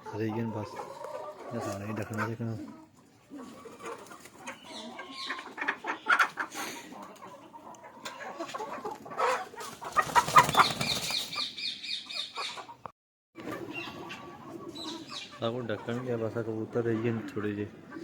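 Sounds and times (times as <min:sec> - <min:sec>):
chickens clucking: 0:00.0 - 0:18.0
wings flapping: 0:09.6 - 0:11.4
high chirping calls: 0:10.3 - 0:12.8.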